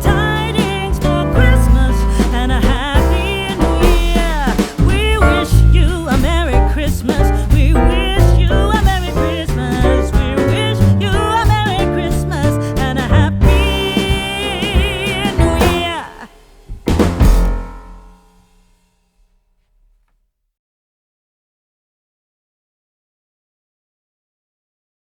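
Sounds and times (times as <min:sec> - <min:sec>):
song with sung vocals: 0:00.0 - 0:16.8.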